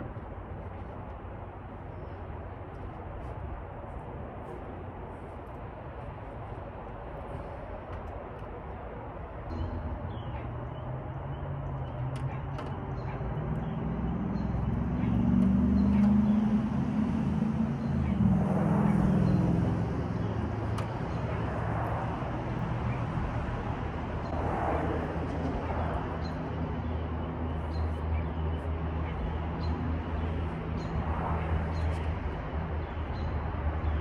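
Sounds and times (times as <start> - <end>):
vehicle engine droning: 9.5 - 34.0.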